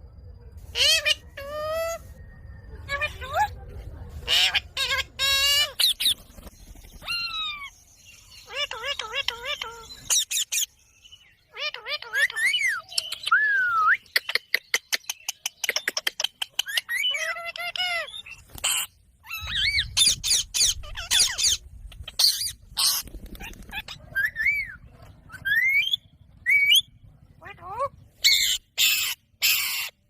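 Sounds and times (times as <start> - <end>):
parrot harsh screeches: 0.7 - 2.0, 28.2 - 30.0
parrot whistled calls: 19.2 - 23.0, 23.7 - 26.9.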